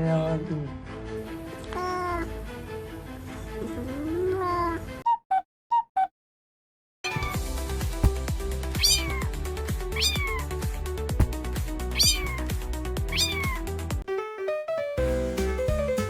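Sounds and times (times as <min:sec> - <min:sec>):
cat meowing: 0:01.6 - 0:02.4, 0:03.7 - 0:05.0, 0:07.1 - 0:07.4, 0:08.8 - 0:09.3, 0:10.0 - 0:10.5, 0:11.9 - 0:12.5, 0:13.1 - 0:13.6
background music with steady beat: 0:07.2 - 0:14.0.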